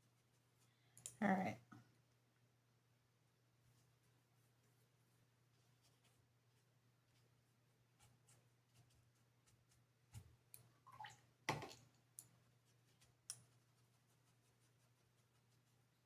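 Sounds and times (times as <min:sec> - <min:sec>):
faint clicks and taps of tools: 0:00.9 - 0:01.2, 0:13.0 - 0:13.6.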